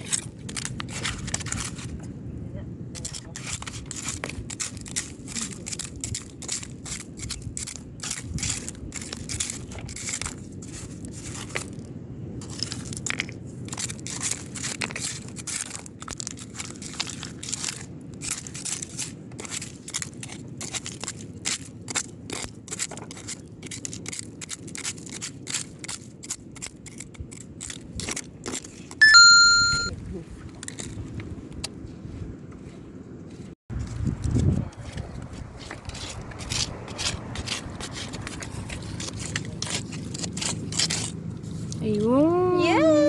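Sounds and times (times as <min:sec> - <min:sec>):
loud electronic beep: 0:29.0 - 0:29.9.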